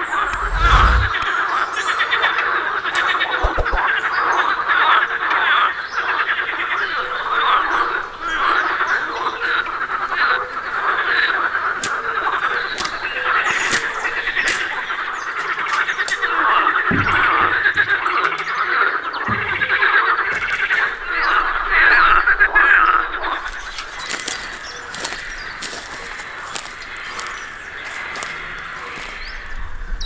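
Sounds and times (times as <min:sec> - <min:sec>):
dull low thumps: 0:00.0 - 0:01.3, 0:03.4 - 0:03.8
frogs croaking: 0:00.0 - 0:30.0.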